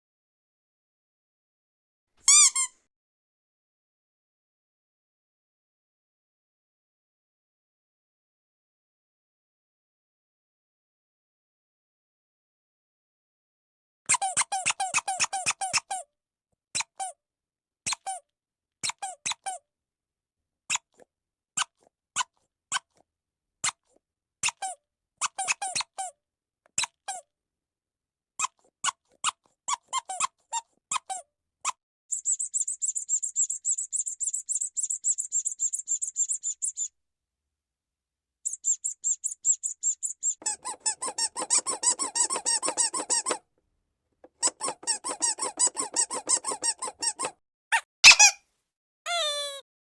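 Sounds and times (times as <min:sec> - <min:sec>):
high squeaks: 0:02.3 - 0:02.7, 0:39.8 - 0:43.4, 0:44.2 - 0:48.4, 0:49.1 - 0:49.6.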